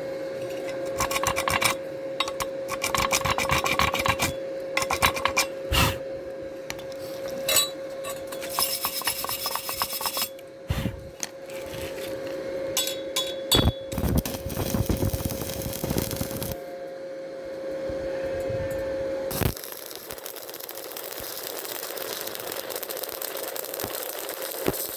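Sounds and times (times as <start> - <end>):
steady hum: 0.0 - 24.9
scraping on steel tube: 8.1 - 10.4.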